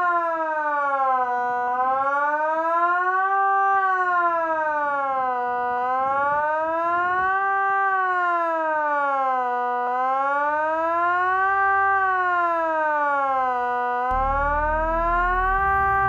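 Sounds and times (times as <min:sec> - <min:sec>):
electronic siren rising and falling: 0:10.6 - 0:16.0.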